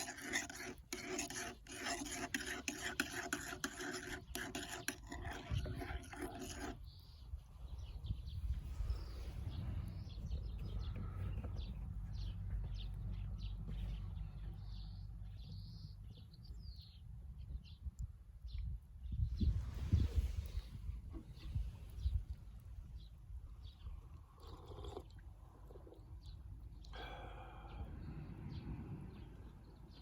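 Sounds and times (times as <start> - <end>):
rasping rubbing scrape: 0.0 - 6.9
birds chirping: 0.0 - 30.0.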